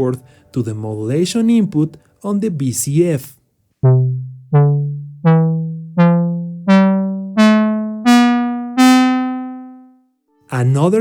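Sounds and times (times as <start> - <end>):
synthesizer plucked notes: 3.8 - 10.0.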